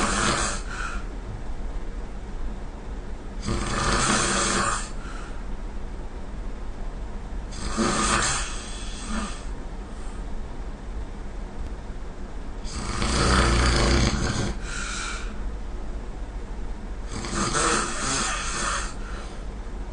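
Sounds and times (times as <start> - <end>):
person snoring: 0.0 - 1.1, 3.4 - 5.3, 7.5 - 9.5, 12.7 - 15.4, 17.1 - 19.4
soft breath out: 5.0 - 5.4.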